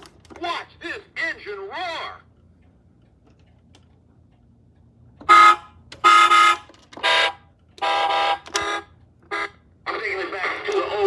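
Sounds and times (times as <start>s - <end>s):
electronic toy horn honks: 5.2s - 9.6s.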